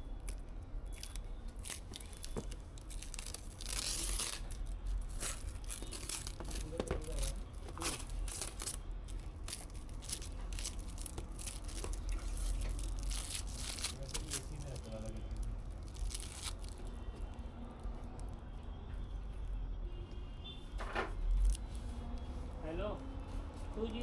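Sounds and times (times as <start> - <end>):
crinkling rustle: 0.2 - 18.3
objects clicking and rustling: 0.9 - 17.0.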